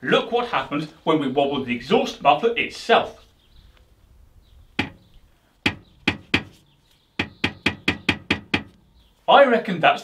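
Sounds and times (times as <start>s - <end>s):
muffler knocking against metal: 4.8s - 6.6s, 7.2s - 8.8s.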